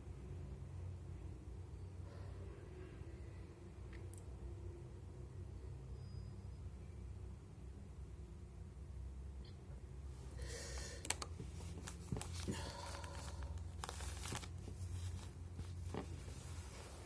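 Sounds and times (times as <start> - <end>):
tissues rustling and crinkling: 10.8 - 17.0.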